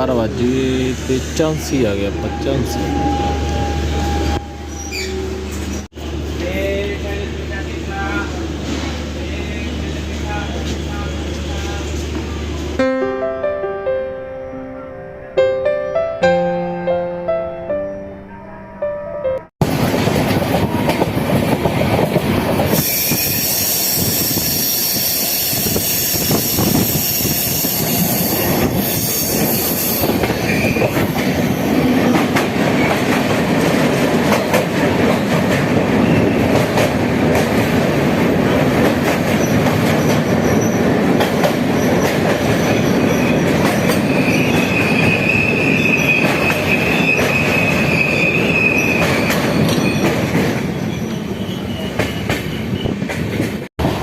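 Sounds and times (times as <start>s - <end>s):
high-pitched wheel squeal: 2.2s - 5.9s, 42.6s - 50.1s
train wheels rumbling on track: 19.6s - 54.0s.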